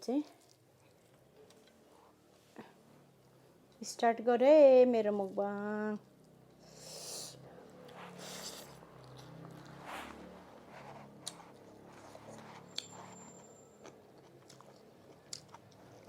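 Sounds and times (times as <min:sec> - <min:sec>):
person chewing food: 0:07.8 - 0:10.2, 0:11.0 - 0:13.2, 0:13.8 - 0:16.0.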